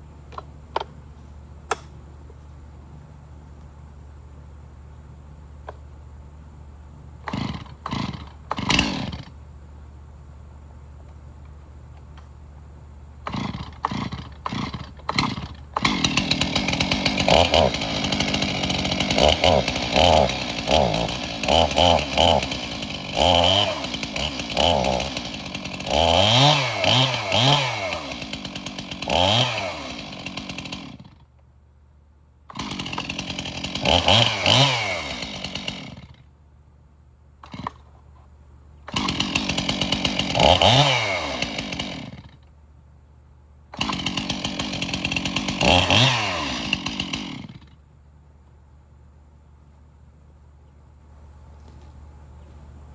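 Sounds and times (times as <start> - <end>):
chainsaw starting and revving: 7.2 - 9.3, 13.2 - 31.2, 32.5 - 36.2, 37.4 - 38.0, 38.9 - 42.4, 43.7 - 47.8.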